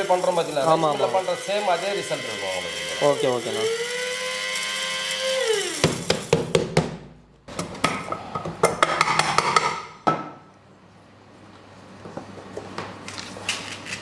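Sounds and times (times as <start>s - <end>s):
mixer grinder motor winding down: 0.0s - 6.0s.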